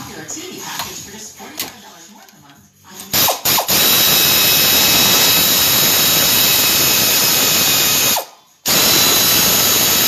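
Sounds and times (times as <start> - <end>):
power tool running loudly: 3.5 - 10.0.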